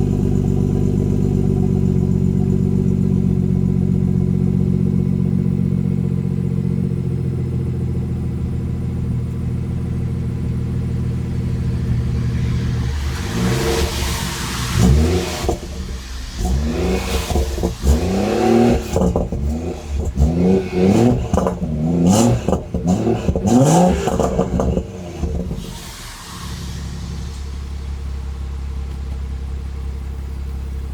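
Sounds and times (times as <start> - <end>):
car engine idling: 0.0 - 30.9
engine revving with cracks: 11.0 - 27.9.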